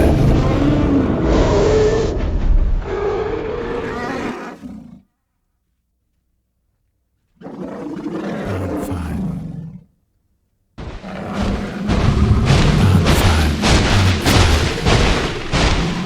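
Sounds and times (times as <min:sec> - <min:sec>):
dinosaur roar: 0:00.0 - 0:05.0, 0:07.4 - 0:09.9, 0:10.8 - 0:16.0
heavy thuds: 0:10.8 - 0:16.0.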